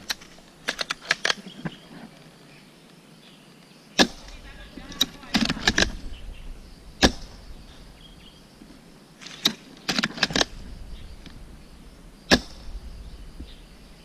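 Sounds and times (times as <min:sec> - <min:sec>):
airsoft rifle clicks and snaps: 0:00.0 - 0:01.8.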